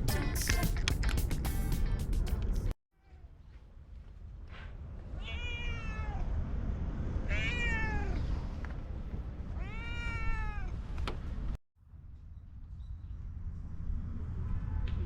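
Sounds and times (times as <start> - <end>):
cat meowing: 5.2 - 6.3, 7.3 - 8.3, 9.5 - 10.8.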